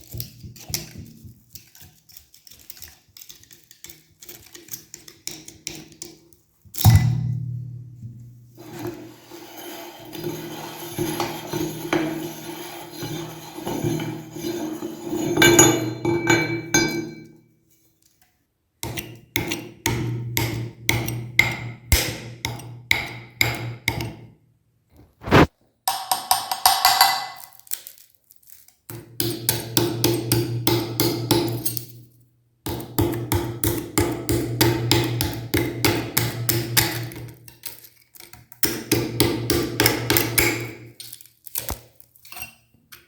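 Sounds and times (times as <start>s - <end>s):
meat grinder crunching candy: 0.0s - 5.9s, 27.4s - 28.9s, 41.0s - 42.3s.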